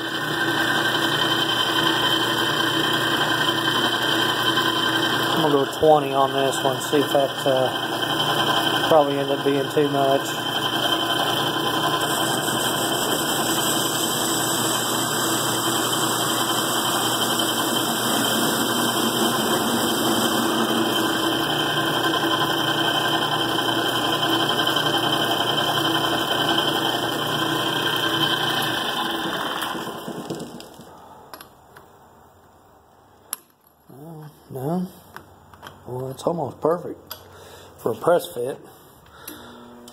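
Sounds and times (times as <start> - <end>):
metal lathe running: 0.0 - 30.2.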